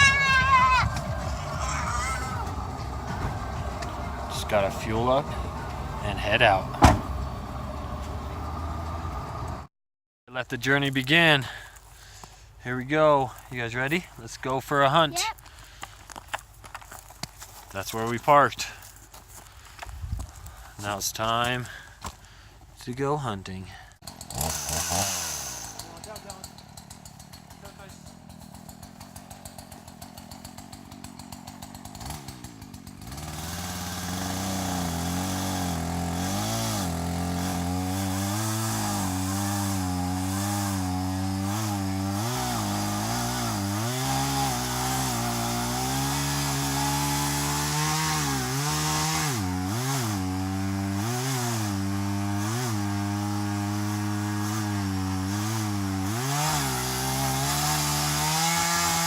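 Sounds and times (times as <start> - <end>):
small engine revving: 24.0 - 28.5, 29.5 - 59.0.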